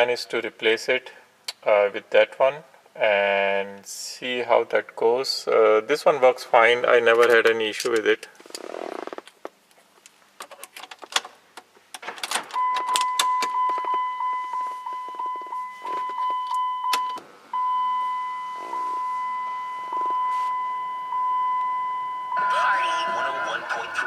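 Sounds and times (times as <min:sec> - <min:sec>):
clicks and small rattles: 0:09.2 - 0:14.0
high-pitched electronic warning tone: 0:12.6 - 0:24.0.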